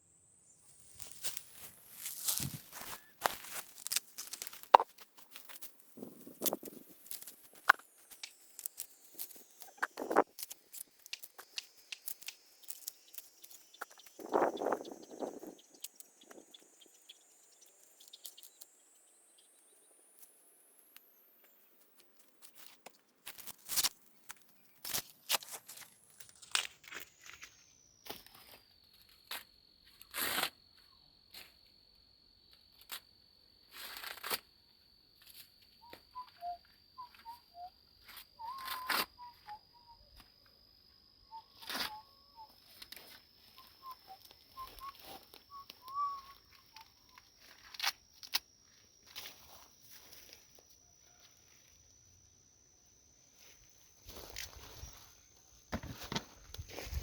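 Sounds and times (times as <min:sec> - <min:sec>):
dry corn leaves rustling and tearing: 0:01.0 - 0:14.2
soft whistled notes: 0:02.3 - 0:03.4, 0:35.8 - 0:40.5, 0:41.2 - 0:52.2
thin high tone: 0:35.8 - 0:56.1.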